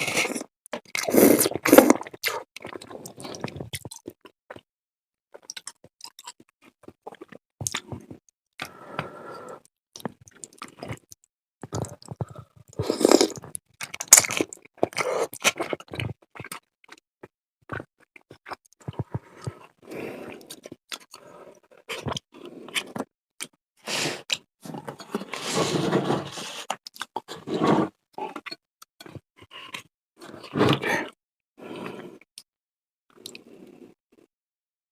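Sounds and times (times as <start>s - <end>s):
person chewing food: 0.0s - 4.6s, 5.3s - 8.8s, 10.0s - 17.0s.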